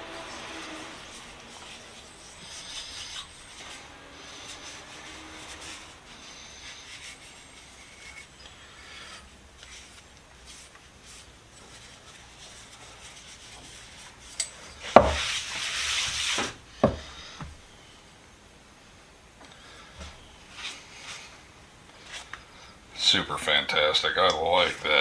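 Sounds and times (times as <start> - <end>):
loud hiss: 0.0 - 7.8
rag rubbing on wrench: 0.0 - 8.7
knock: 16.8 - 17.1.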